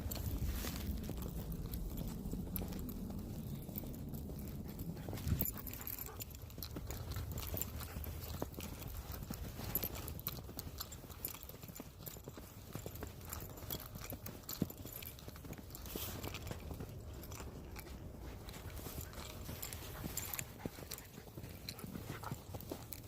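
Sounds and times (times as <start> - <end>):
low rumble: 0.0 - 7.5
footsteps crunching through snow: 0.0 - 23.0.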